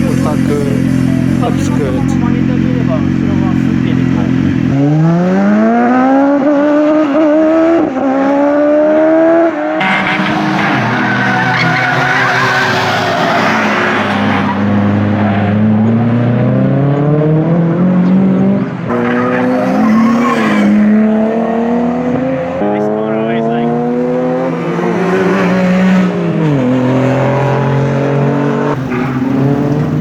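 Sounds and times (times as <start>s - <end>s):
car engine revving: 0.0s - 30.0s
tyre squeal: 9.8s - 14.7s, 18.9s - 20.9s.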